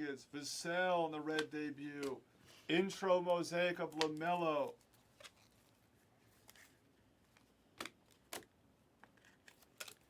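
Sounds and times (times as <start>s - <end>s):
soft clicks of cards: 3.9s - 5.6s.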